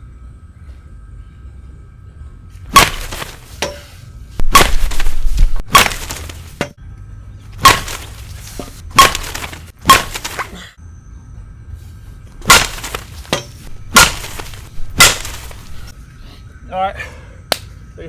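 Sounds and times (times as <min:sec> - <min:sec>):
bat hitting softball: 0:02.7 - 0:06.8, 0:07.6 - 0:10.6, 0:12.4 - 0:15.9.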